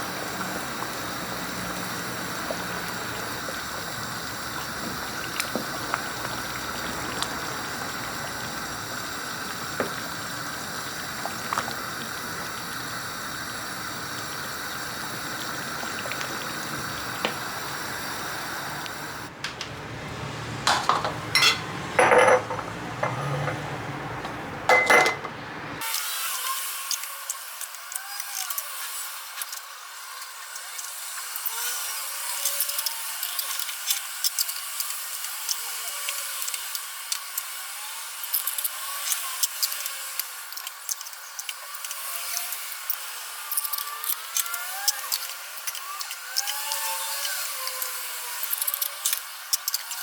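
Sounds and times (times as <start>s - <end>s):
running water: 0.0s - 19.3s
dishes and cutlery clinking: 20.7s - 23.6s, 24.7s - 25.3s.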